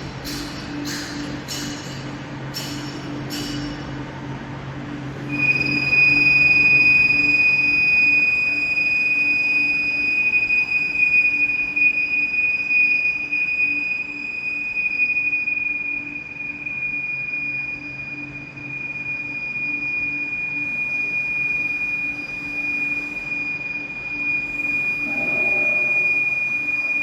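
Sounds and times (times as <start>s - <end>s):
high-pitched machine whine: 4.7s - 27.0s
machine low hum: 15.8s - 27.0s.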